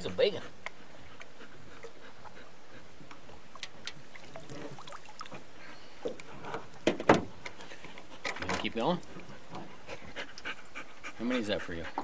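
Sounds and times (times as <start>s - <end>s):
low hiss of water: 0.0s - 12.0s
light clicks and knocks: 6.0s - 9.7s.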